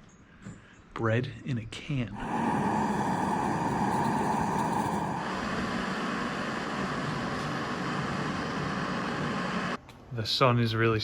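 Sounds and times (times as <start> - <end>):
gas stove burner hissing: 2.1 - 9.8.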